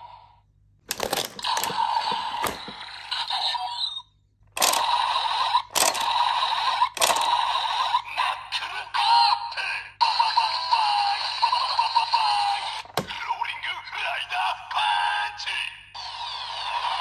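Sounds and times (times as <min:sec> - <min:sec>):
toy clicks: 0:00.9 - 0:02.9, 0:04.6 - 0:07.6
toy electronic sound effects: 0:00.9 - 0:09.2.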